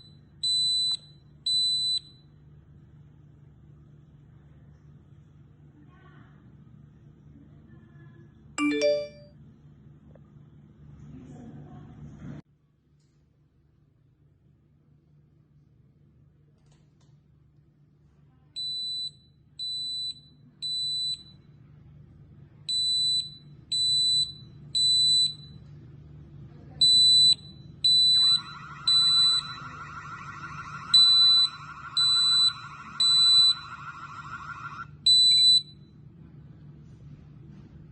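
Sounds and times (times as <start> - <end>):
smoke alarm beeping: 0.0 - 2.2, 8.6 - 9.3, 18.6 - 21.4, 22.7 - 25.6, 26.8 - 35.8.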